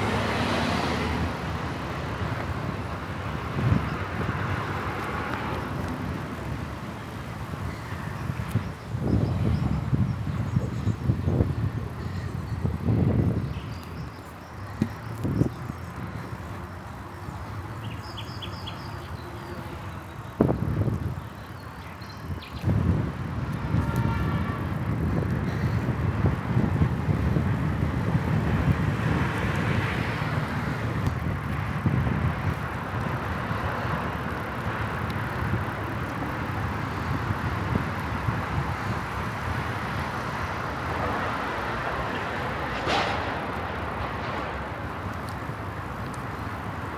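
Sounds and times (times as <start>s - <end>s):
bicycle tyre rumble: 0.0s - 46.9s
wind on microphone: 7.6s - 14.2s, 20.3s - 21.3s, 22.3s - 46.7s.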